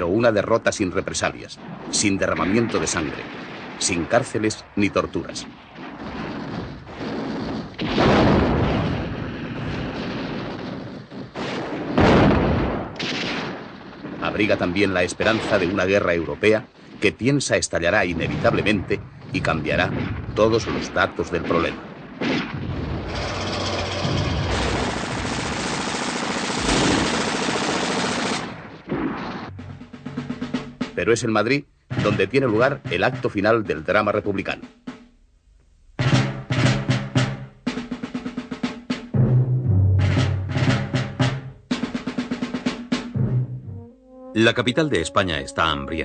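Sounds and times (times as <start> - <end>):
explosions: 1.1 - 30.6
gunfire: 1.6 - 4.4, 5.4 - 15.9, 19.9 - 30.8
rapid automatic gunfire: 22.2 - 28.7.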